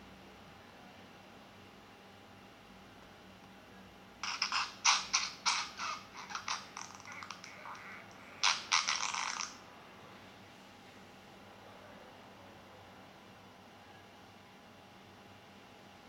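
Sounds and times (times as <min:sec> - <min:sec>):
sputtering fart sounds: 0:04.2 - 0:09.6.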